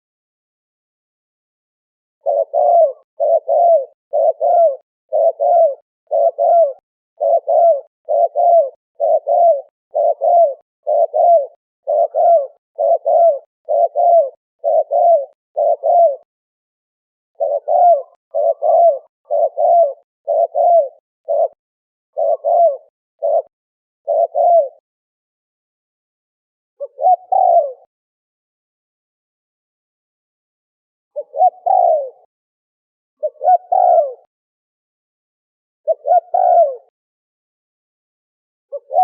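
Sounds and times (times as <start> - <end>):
dove cooing: 2.2 - 16.3, 17.4 - 24.8, 26.8 - 27.9, 31.2 - 32.3, 33.2 - 34.3, 35.8 - 36.9, 38.7 - 39.0.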